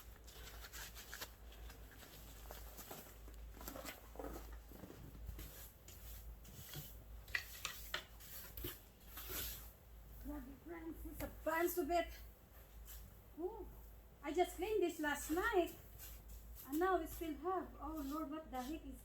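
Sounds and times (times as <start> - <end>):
brushing snow off a car: 14.9 - 19.0.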